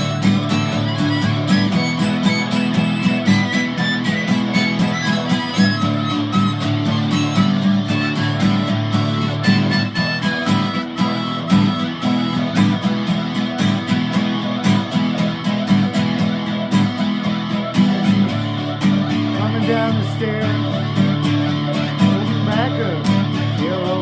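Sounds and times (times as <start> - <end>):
strummed guitar music: 0.0 - 24.0.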